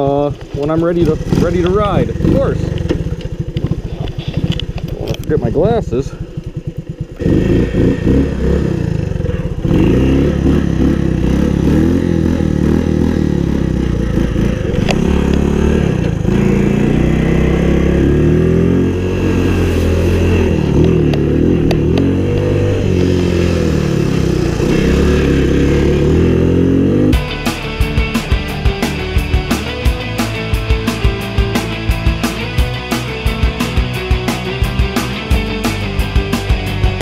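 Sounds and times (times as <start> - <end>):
small engine revving: 0.8 - 5.5, 6.1 - 27.6.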